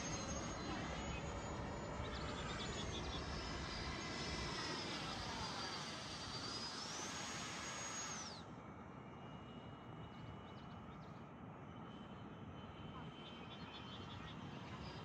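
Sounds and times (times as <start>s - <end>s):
electric ducted fan whining: 0.0s - 10.5s.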